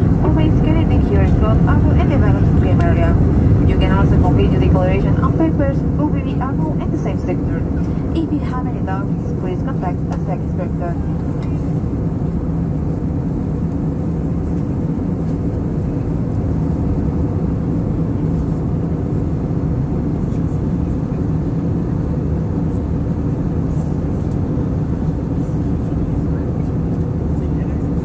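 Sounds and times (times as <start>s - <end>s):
airliner cabin drone: 0.0s - 28.0s.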